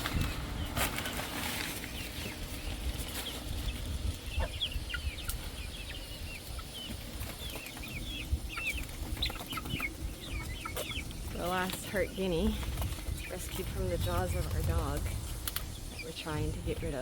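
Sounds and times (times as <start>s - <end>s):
chicks peeping: 0.0s - 17.0s
low rumble: 12.6s - 17.0s.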